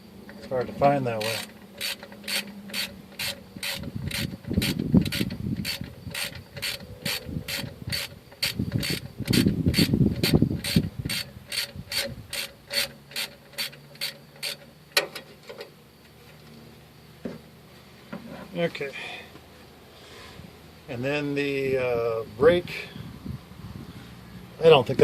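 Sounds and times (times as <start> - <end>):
rough handling of tool and parts: 0.0 - 19.7
ratchet wrench clicking: 0.3 - 14.7.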